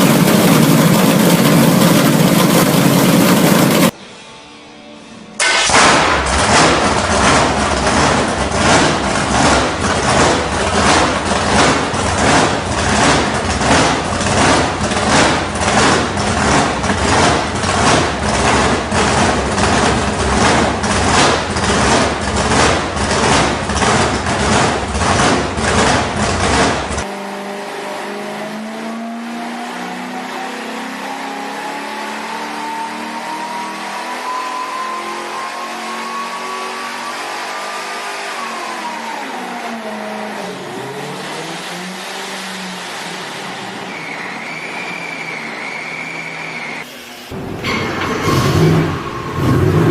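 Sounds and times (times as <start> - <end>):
engine running with lumpy pulse: 0.0 - 4.0, 6.2 - 27.0.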